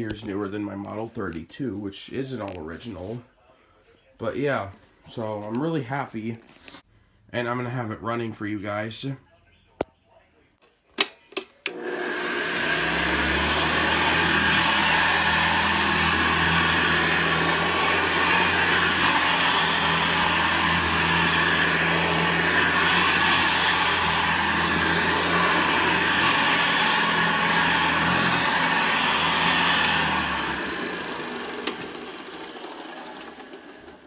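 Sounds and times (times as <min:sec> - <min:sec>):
vacuum cleaner running: 0:11.7 - 0:34.0.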